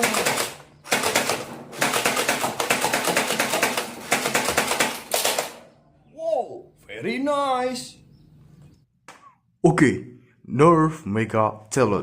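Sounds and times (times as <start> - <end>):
toy gun firing rapid clicks: 0.0 - 5.6.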